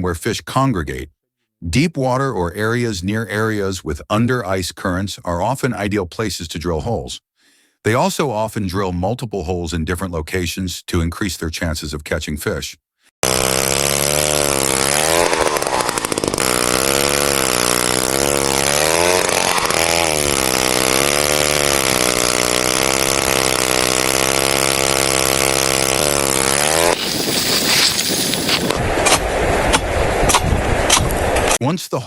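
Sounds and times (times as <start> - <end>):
ice auger motor drilling: 13.2 - 28.8.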